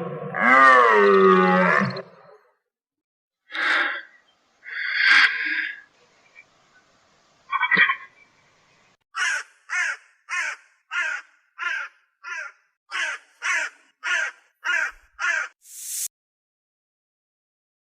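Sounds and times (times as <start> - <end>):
bird giving harsh calls: 9.2 - 15.8
rising hiss: 15.6 - 16.1.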